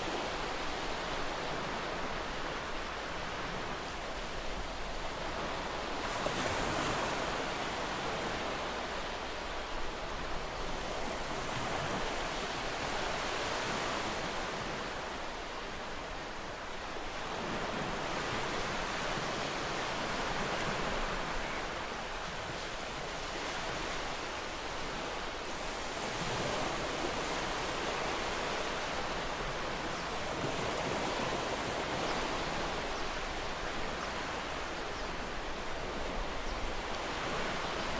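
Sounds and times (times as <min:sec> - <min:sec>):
ocean waves washing on shore: 0:00.0 - 0:37.9.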